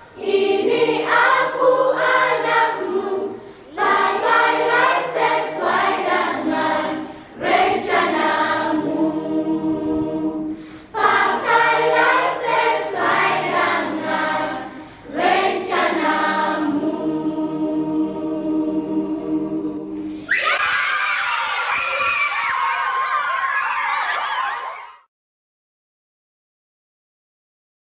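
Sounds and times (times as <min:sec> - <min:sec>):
choir singing a cappella: 0:00.0 - 0:20.3.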